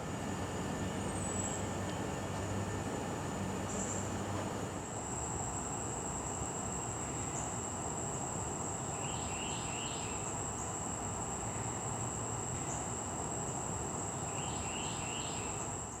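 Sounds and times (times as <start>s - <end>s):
high-pitched insect trill: 14.1s - 15.7s.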